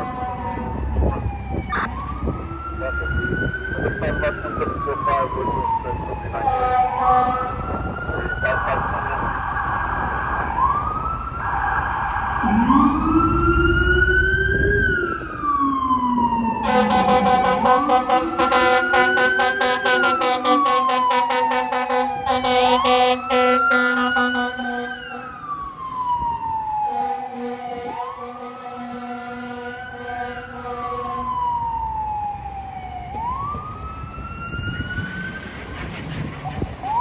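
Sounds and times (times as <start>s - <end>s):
siren wailing: 0.0s - 37.0s
air horn blasts: 6.4s - 7.7s, 16.6s - 25.5s, 26.9s - 31.3s.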